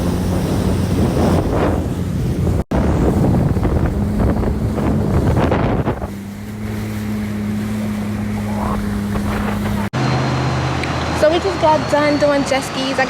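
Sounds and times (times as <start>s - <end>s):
wind noise on microphone: 0.0s - 6.9s, 7.7s - 9.9s
jet ski engine hum: 0.0s - 13.0s.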